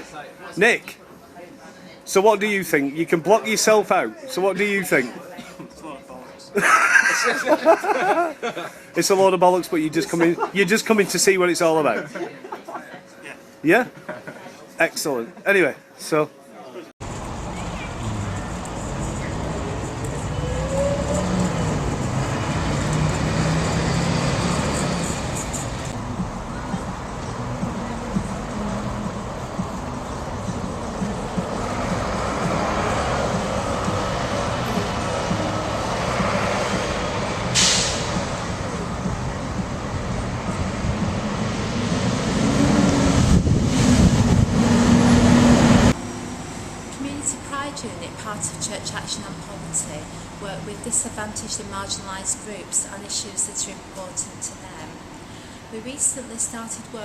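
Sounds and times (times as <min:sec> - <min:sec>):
vehicle engine running: 0:17.0 - 0:37.5
rising whine: 0:17.1 - 0:47.0
wind on microphone: 0:42.1 - 0:45.9.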